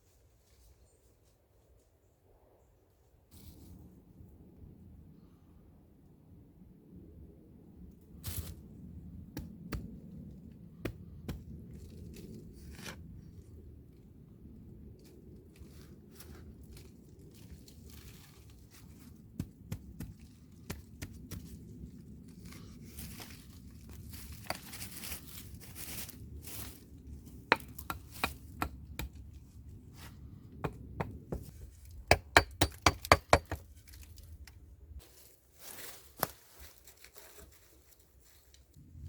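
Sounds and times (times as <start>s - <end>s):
rustling and crinkling: 15.0s - 30.4s, 33.6s - 38.9s.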